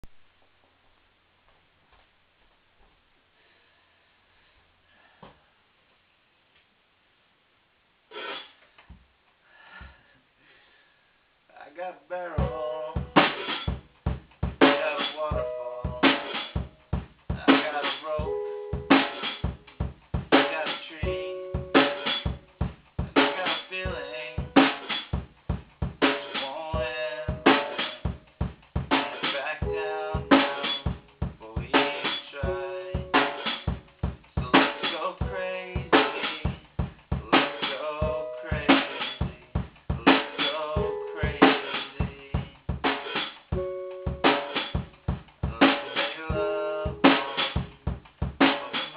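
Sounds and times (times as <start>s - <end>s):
drum kit steady beat: 8.1s - 8.6s, 12.4s - 48.9s.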